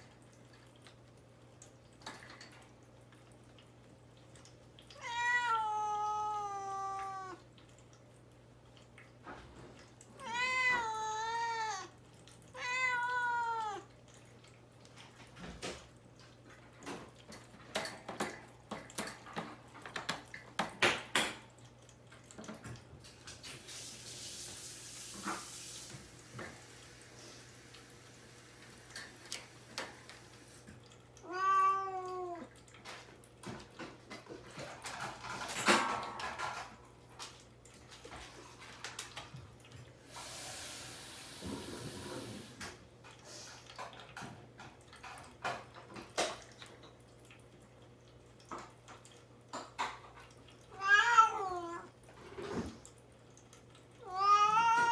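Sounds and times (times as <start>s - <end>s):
cat meowing: 4.9s - 7.4s, 10.2s - 13.9s, 31.2s - 32.5s, 50.7s - 51.9s, 54.0s - 54.9s.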